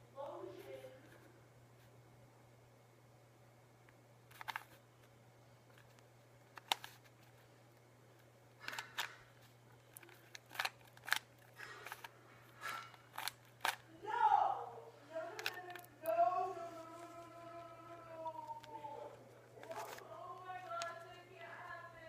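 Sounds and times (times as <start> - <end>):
puzzle cube clicking: 6.5 - 7.1, 8.6 - 9.2, 9.9 - 12.1, 13.1 - 13.8, 15.3 - 15.9.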